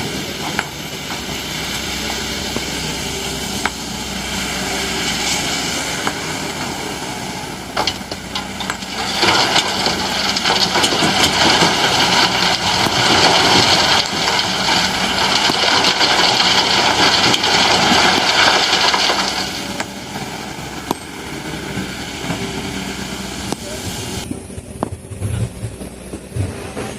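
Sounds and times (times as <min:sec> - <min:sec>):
diesel engine running: 0:00.0 - 0:26.9
sand and stone clattering: 0:07.7 - 0:22.6.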